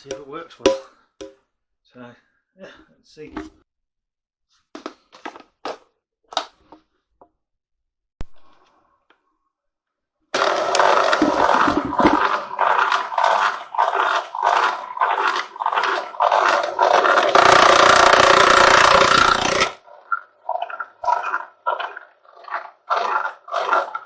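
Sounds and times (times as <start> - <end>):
wire stripping machine motor: 10.4 - 11.6, 17.2 - 19.8.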